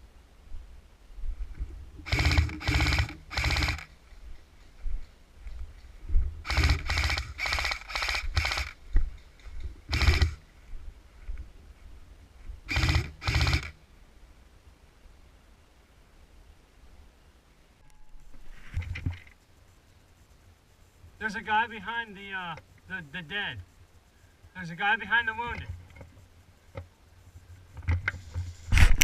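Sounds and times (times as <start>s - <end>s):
airsoft gun firing bursts: 2.1s - 4.0s, 6.4s - 8.8s, 9.9s - 10.4s, 12.7s - 13.8s.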